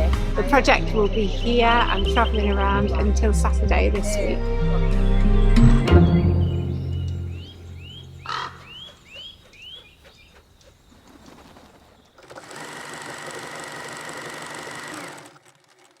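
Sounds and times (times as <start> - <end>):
quick rising bird-like chirps: 4.8 - 11.8.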